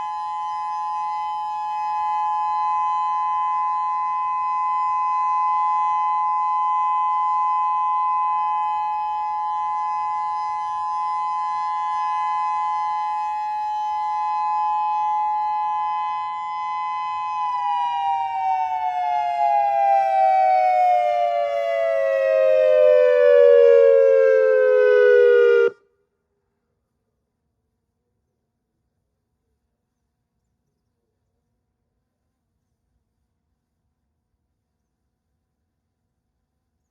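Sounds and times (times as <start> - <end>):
electronic warning siren: 0.0 - 25.8.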